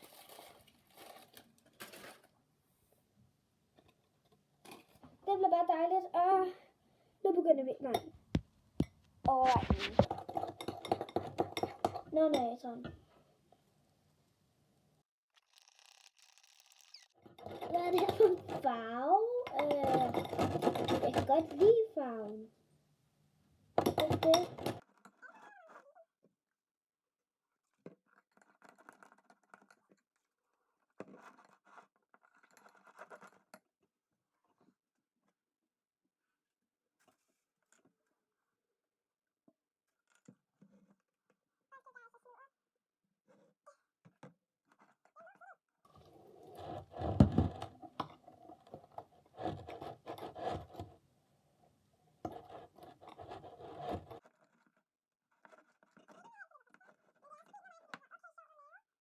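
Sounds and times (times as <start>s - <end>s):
slime scraping and squishing: 9.3s - 12.1s, 15.4s - 21.8s, 27.6s - 34.8s, 45.9s - 51.0s, 52.2s - 57.2s
cat meowing faintly: 25.2s - 26.1s.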